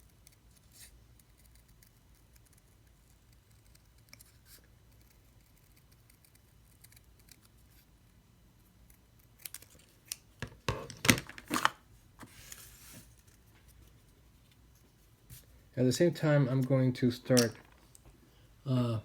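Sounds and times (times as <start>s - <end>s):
paper rustling: 10.8s - 14.0s.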